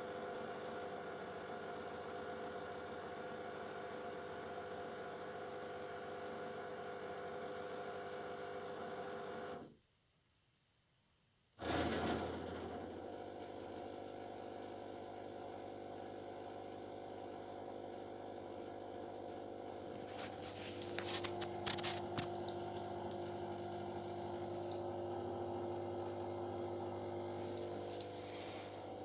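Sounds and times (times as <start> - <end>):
drain pump humming: 11.6 - 29.0
pump crackling: 19.9 - 29.0.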